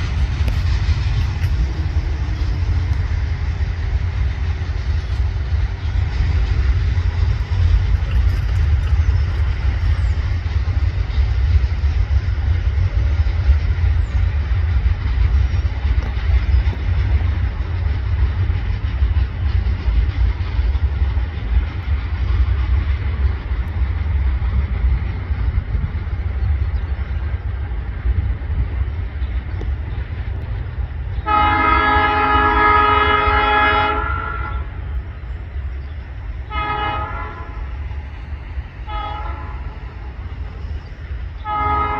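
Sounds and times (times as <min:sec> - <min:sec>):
low rumble: 0:00.0 - 0:31.3.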